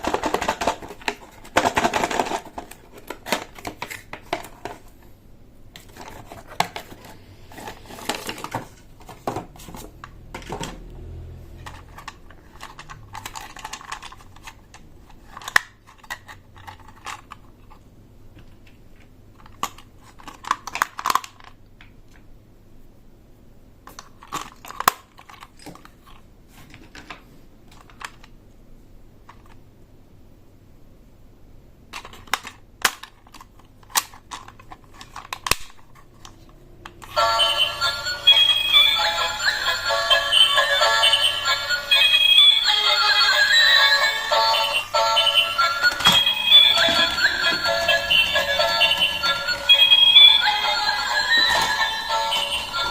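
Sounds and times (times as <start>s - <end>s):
plastic pieces clicking: 11.6s - 17.5s.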